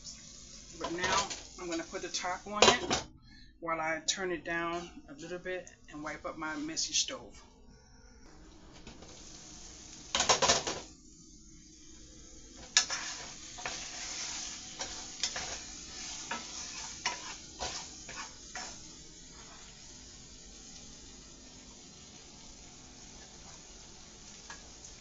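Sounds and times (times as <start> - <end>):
sauce sizzling in a pot: 0.0 - 3.0, 8.3 - 25.0.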